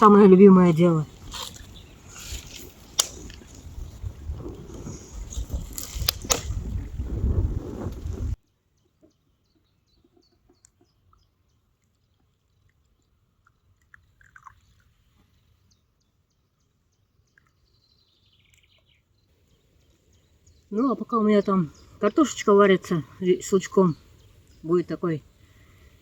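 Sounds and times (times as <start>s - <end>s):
bird chirps and calls: 17.3s - 25.7s.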